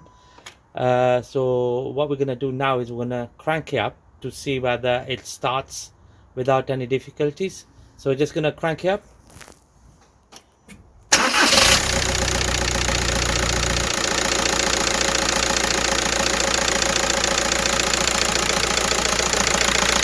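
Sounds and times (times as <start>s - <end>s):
diesel engine cranking and starting: 11.1s - 20.0s
diesel engine idling: 11.2s - 20.0s.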